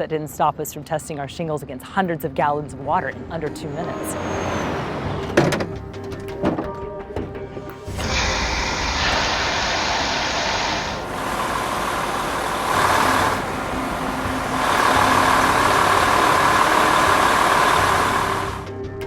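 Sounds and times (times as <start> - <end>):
heavy water spray on a roof: 7.9 - 18.7.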